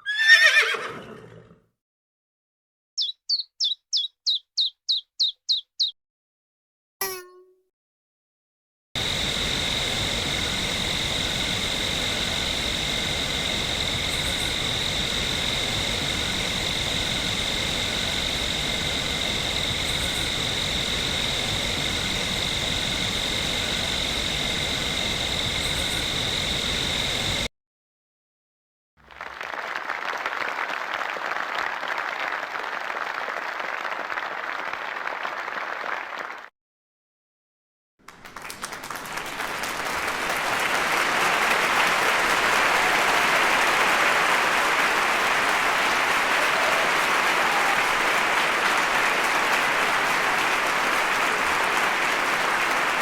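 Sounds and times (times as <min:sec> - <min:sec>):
steady hiss with high whine: 0:09.0 - 0:27.5
applause: 0:09.9 - 0:21.0, 0:29.0 - 0:36.5, 0:38.0 - 0:53.0.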